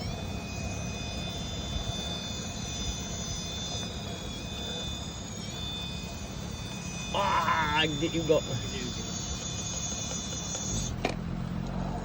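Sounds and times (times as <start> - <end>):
constant low rumble: 0.0 - 12.0
electric motor whining: 0.0 - 12.0.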